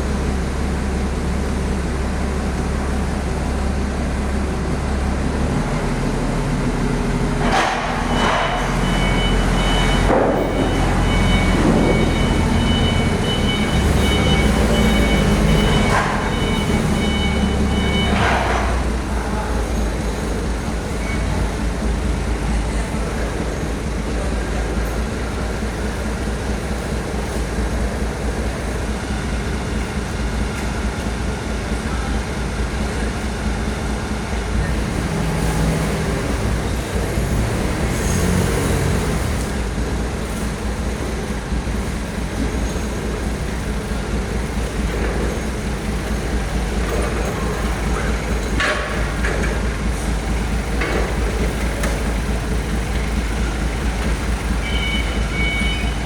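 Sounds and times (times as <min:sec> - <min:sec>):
heavy vehicle engine rumbling: 0:00.0 - 0:56.0
traffic noise: 0:00.0 - 0:56.0
beeping tone: 0:08.1 - 0:18.7, 0:54.5 - 0:56.0.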